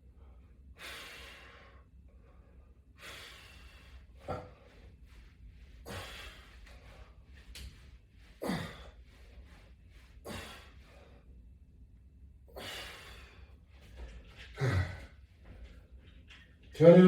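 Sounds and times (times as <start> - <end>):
man exhaling forcefully: 5.9 - 6.4, 8.4 - 9.0, 10.3 - 10.7, 12.5 - 13.4.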